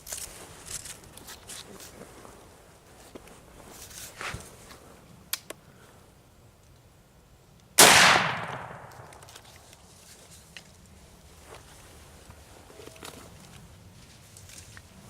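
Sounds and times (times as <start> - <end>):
rifle shot echoing: 7.8 - 9.4.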